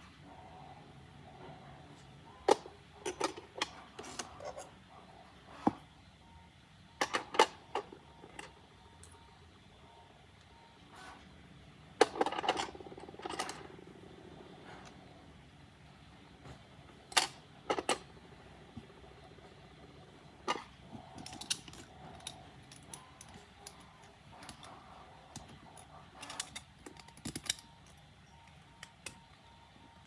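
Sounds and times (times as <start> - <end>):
plastic parts clicking and knocking: 2.4 - 4.7, 5.6 - 5.8, 12.0 - 13.6, 16.5 - 19.0, 20.3 - 29.4.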